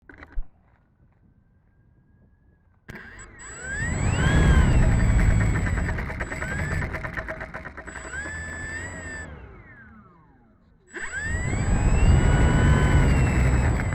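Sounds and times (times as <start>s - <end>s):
electric motor and propeller whine: 2.9s - 13.9s.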